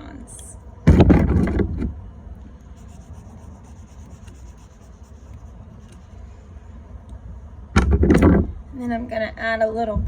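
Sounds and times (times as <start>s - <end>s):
low steady hum: 0.0s - 10.0s
marker scratching on paper: 2.7s - 6.2s.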